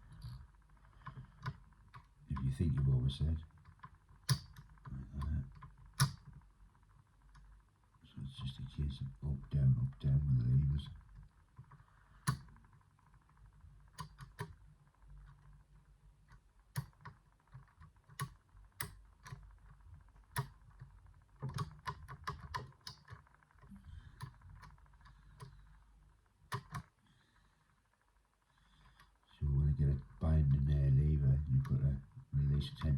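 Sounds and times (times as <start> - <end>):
lock pick clicking and tapping: 4.2 - 4.7, 6.0 - 6.3, 21.4 - 23.2, 26.5 - 26.9.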